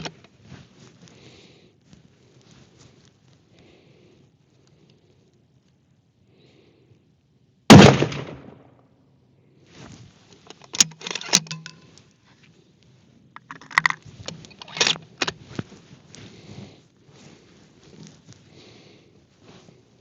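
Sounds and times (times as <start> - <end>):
rifle shot: 7.7 - 8.8
rifle bolt clicking: 10.5 - 11.8.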